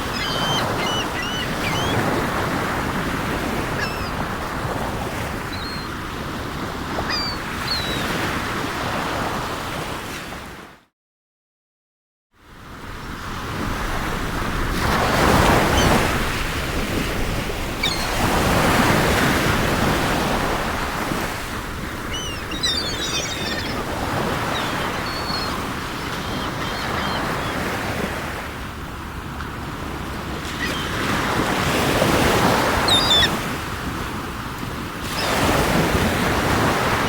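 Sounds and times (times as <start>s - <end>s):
seagull cries: 0.0s - 4.3s, 5.4s - 5.9s, 6.9s - 8.2s, 17.8s - 19.0s, 21.9s - 28.4s, 30.4s - 33.5s
sea surf washing ashore: 0.0s - 9.8s, 13.6s - 37.0s.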